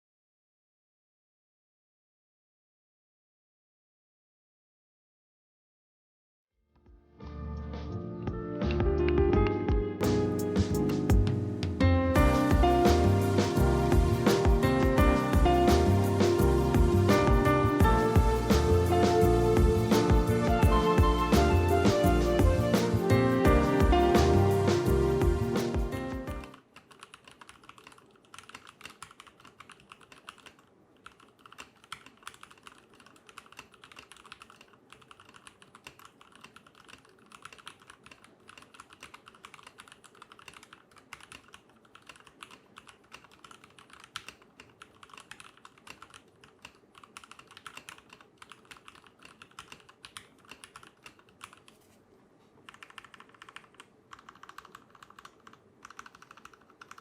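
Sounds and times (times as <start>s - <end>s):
mechanical keyboard typing: 26.2s - 51.8s, 52.6s - 57.0s.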